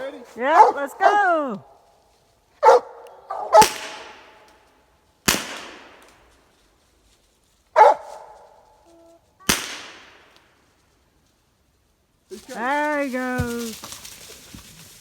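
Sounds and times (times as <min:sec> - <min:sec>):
hound barking: 0:00.4 - 0:01.7, 0:02.6 - 0:04.1, 0:07.8 - 0:08.7
gunshots with echo: 0:03.6 - 0:04.4, 0:05.3 - 0:06.1, 0:09.5 - 0:10.3.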